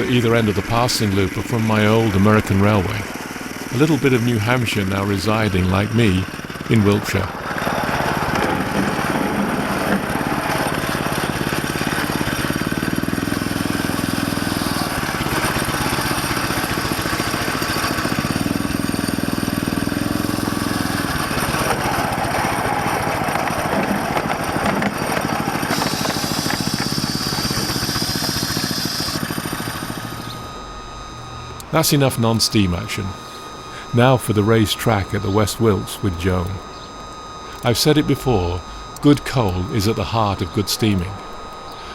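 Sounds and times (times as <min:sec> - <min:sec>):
small petrol engine running: 0:00.0 - 0:31.7.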